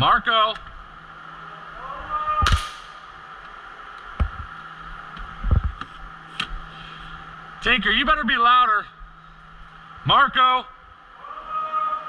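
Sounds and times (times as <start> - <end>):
distant shout: 1.4 - 2.7, 11.1 - 12.0
airsoft gun shot: 2.4 - 3.0.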